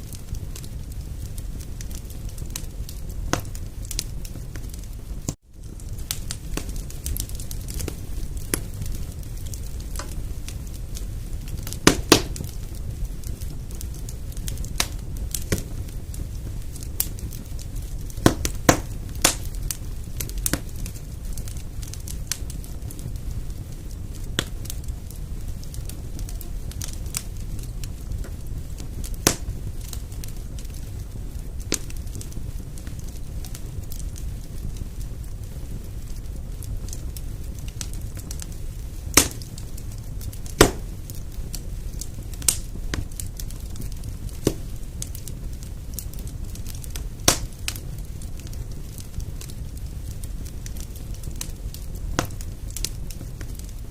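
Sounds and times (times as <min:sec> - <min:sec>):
fire crackling: 0:00.0 - 0:53.9.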